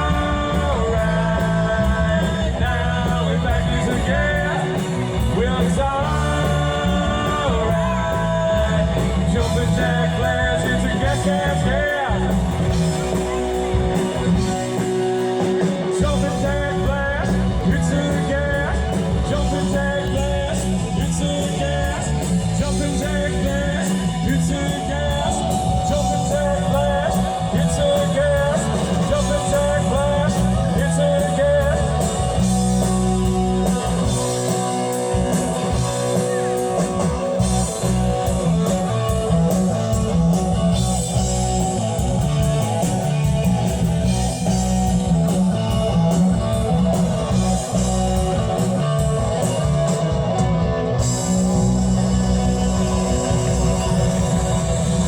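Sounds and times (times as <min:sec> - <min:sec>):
person singing: 0:00.0 - 0:42.7
guitar: 0:00.0 - 0:55.0
live rock band: 0:00.0 - 0:55.0.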